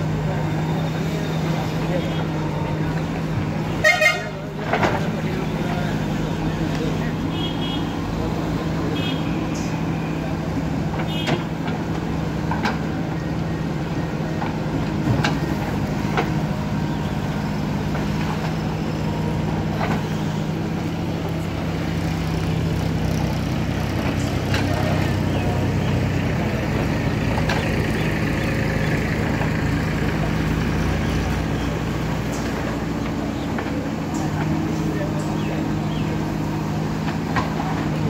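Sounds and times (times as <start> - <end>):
diesel engine running: 0.0 - 38.0.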